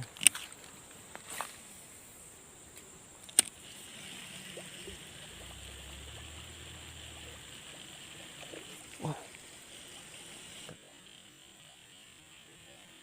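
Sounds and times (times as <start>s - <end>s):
fishing reel whirring: 3.4s - 13.0s.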